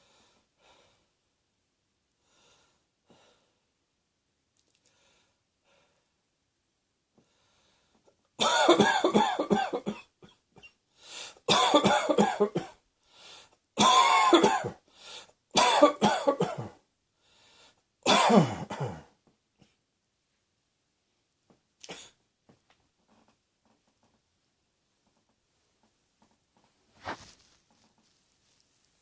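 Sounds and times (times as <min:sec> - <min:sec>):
person coughing: 0:08.4 - 0:10.8, 0:11.5 - 0:12.8, 0:13.8 - 0:14.8, 0:15.6 - 0:16.8, 0:18.1 - 0:19.8.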